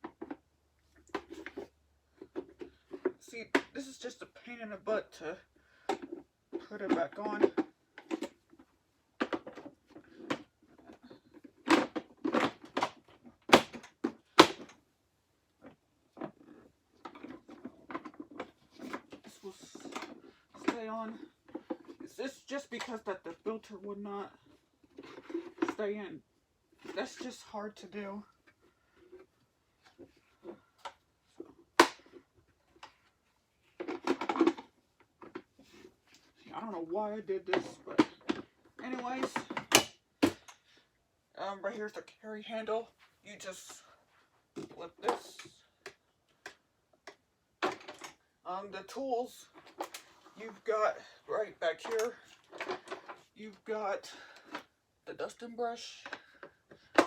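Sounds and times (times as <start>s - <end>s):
plastic parts clicking and knocking: 0.0s - 3.8s, 5.8s - 14.9s, 15.5s - 22.1s, 24.3s - 25.8s, 28.3s - 36.4s, 37.5s - 40.9s, 44.6s - 48.3s, 49.5s - 50.7s, 51.6s - 55.4s, 56.0s - 57.0s
plastic rattling: 5.8s - 14.8s, 15.6s - 22.1s, 24.4s - 25.8s, 28.6s - 36.4s, 51.6s - 53.3s.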